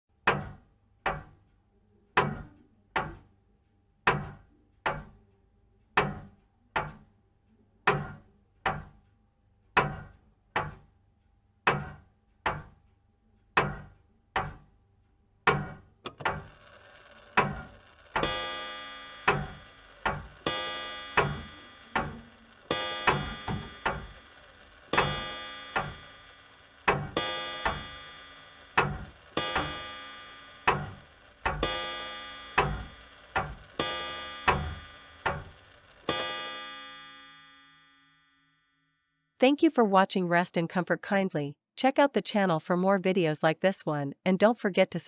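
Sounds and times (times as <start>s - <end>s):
grandfather clock ticking: 15.5s - 37.0s
clock chime tones: 16.1s - 38.3s.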